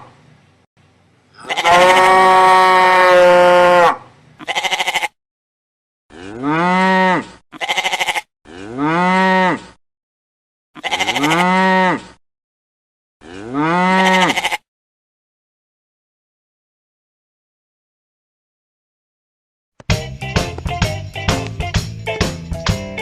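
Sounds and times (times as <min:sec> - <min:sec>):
cow mooing: 0:01.4 - 0:05.1, 0:06.1 - 0:09.8, 0:10.8 - 0:12.2, 0:13.2 - 0:14.6
quavering bleat-like calls: 0:01.4 - 0:05.2, 0:06.1 - 0:09.8, 0:10.8 - 0:12.2, 0:13.2 - 0:14.7.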